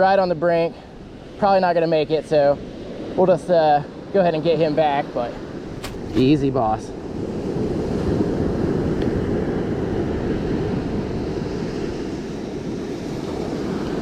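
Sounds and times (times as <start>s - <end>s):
ocean surf: 0.0s - 14.0s
wind on microphone: 5.6s - 14.0s.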